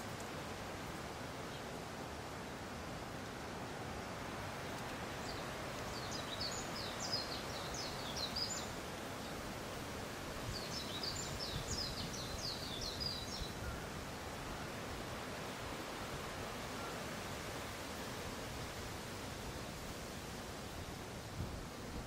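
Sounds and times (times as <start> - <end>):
wind rustling through leaves: 0.0 - 22.0
songbird twittering: 5.2 - 8.8, 10.5 - 13.9.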